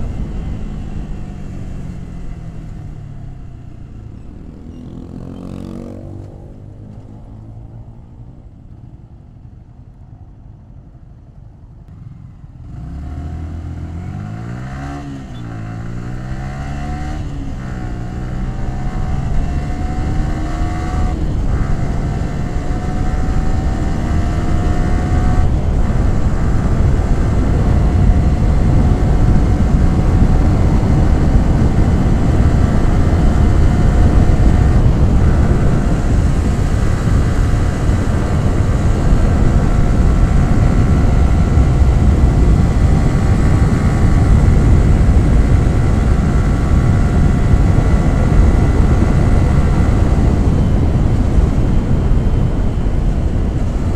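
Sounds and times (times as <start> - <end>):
motorcycle engine accelerating: 0.0 - 10.7, 11.4 - 53.9
rushing wind: 0.0 - 53.9.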